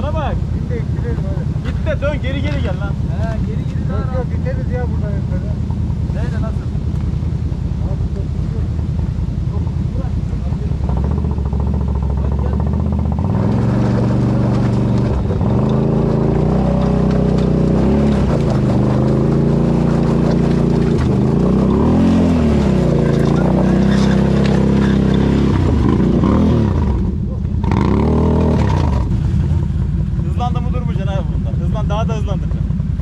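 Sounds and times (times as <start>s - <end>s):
engine revving under load: 9.5s - 32.4s.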